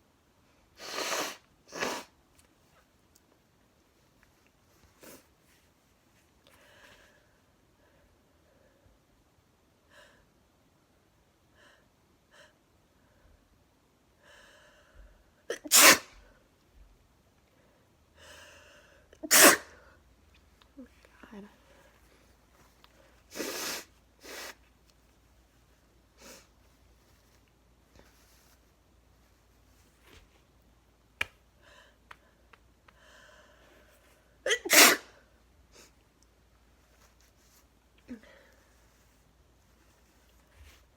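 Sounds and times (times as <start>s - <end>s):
loud sneeze: 0.8s - 2.2s, 15.5s - 16.3s, 19.2s - 19.9s, 23.3s - 24.6s, 34.4s - 35.3s
woman sneezing: 15.5s - 16.2s, 19.2s - 19.8s, 34.5s - 35.2s.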